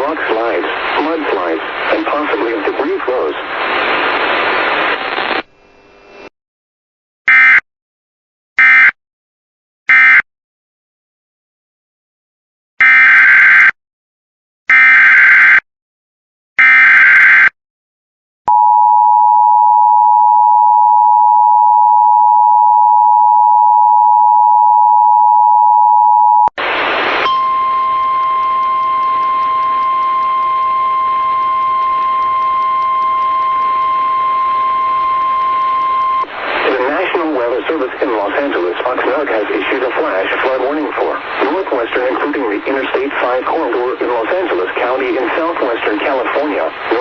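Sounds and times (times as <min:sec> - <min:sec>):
burst of static: 0:00.0 - 0:06.3, 0:26.6 - 0:35.2, 0:36.2 - 0:47.0
single-pitch warning alarm tone: 0:09.9 - 0:10.2, 0:27.2 - 0:36.3
two-tone attention signal: 0:27.2 - 0:36.3.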